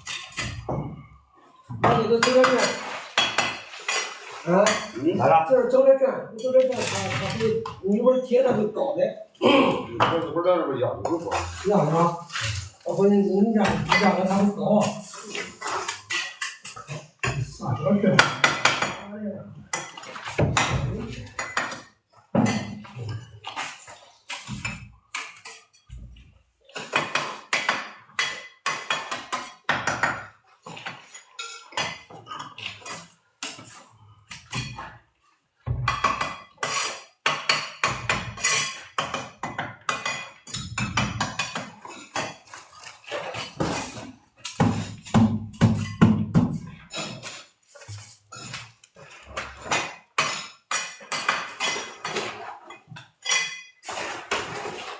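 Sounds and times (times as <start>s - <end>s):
tools clinking on tile and metal: 0.0s - 0.9s, 13.6s - 19.1s, 19.7s - 26.0s, 26.7s - 35.0s, 35.7s - 54.9s.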